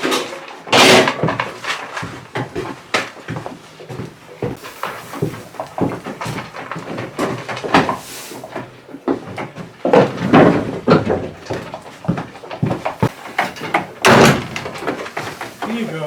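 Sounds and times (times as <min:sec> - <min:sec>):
goats feeding: 0:00.0 - 0:16.0
knocks and clatters of gear: 0:00.0 - 0:16.0
hay rustling: 0:04.5 - 0:08.8, 0:13.0 - 0:16.0.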